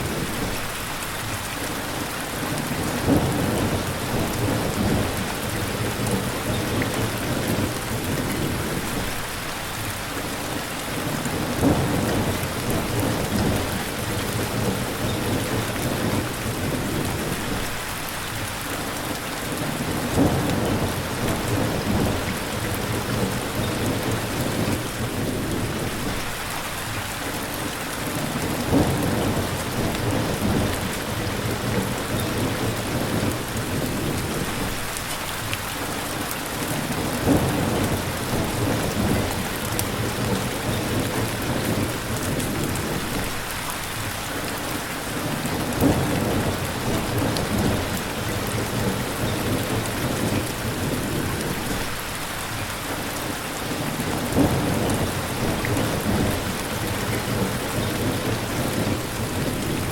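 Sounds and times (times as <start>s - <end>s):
steady rain: 0.0s - 59.9s
thunder rumbling: 19.8s - 26.4s, 28.4s - 34.8s, 36.9s - 43.4s, 45.5s - 52.0s, 53.7s - 59.9s.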